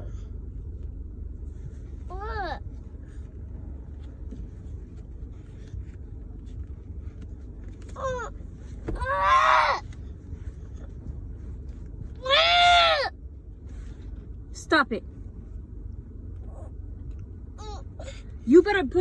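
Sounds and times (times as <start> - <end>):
low rumble of car cabin: 0.0 - 19.0
toddler whining: 9.0 - 9.8.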